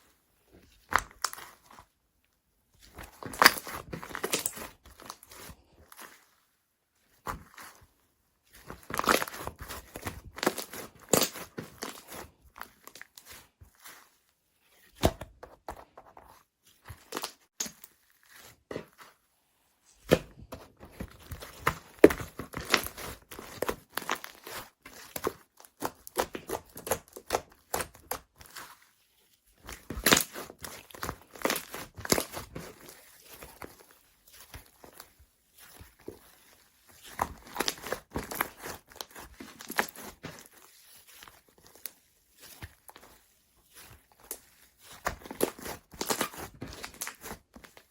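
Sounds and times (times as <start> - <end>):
slime squished by hand: 29.6 - 36.3, 36.9 - 47.8.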